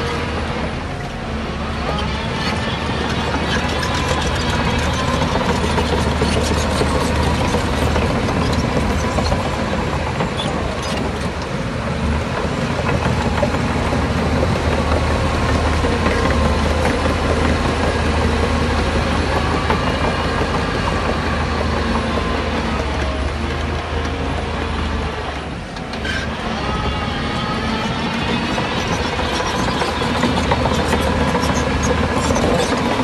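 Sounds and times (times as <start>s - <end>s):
heavy diesel engine running: 0.0s - 33.0s.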